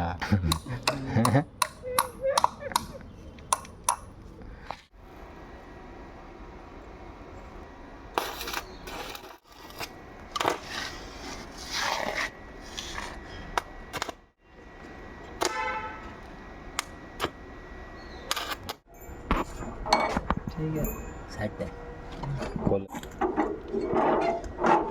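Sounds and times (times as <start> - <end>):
metallic ring: 20.8 - 21.4.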